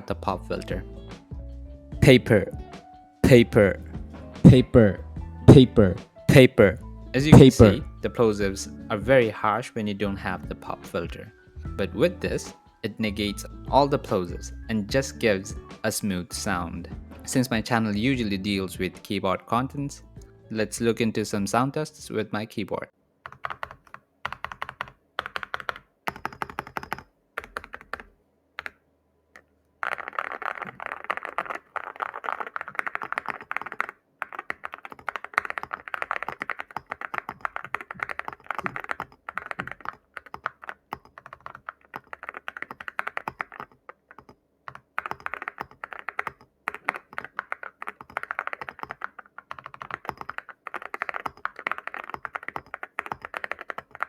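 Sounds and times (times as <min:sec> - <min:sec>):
mechanical keyboard typing: 0:07.3 - 0:07.8, 0:23.2 - 0:28.8, 0:29.8 - 0:54.0.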